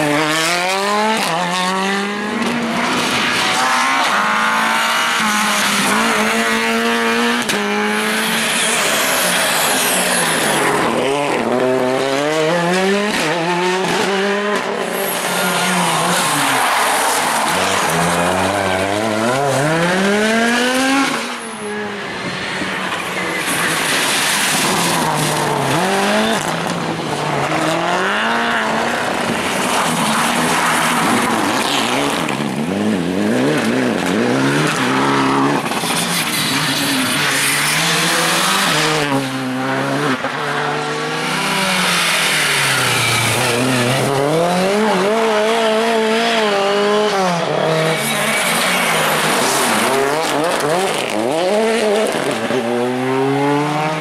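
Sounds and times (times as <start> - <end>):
rally car engines at full throttle: 0.0 - 54.0.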